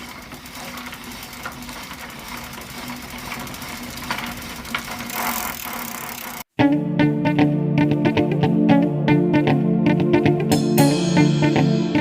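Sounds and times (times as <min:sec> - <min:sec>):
small machine humming: 0:00.0 - 0:06.5.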